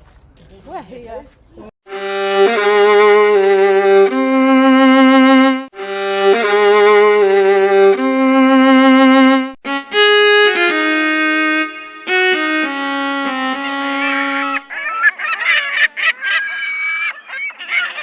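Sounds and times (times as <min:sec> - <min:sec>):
violin playing long held notes: 0:01.9 - 0:14.7.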